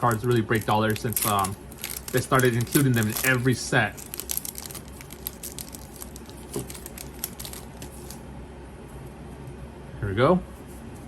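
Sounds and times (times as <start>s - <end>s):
foil wrapper crinkling: 0.0s - 8.2s.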